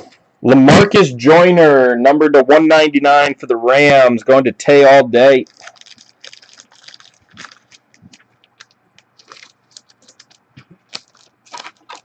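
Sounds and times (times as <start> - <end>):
trading cards being flipped: 7.2 - 12.0.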